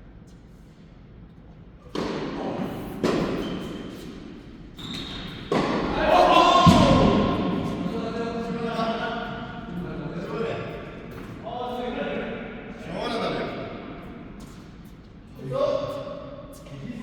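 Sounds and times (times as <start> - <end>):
tennis balls struck by rackets: 1.9 - 2.4, 5.3 - 6.0.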